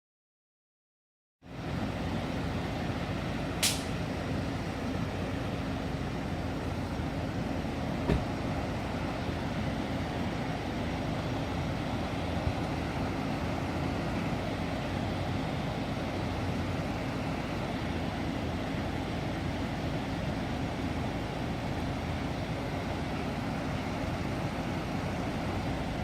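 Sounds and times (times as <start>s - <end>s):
sharp click: 3.6s - 4.0s.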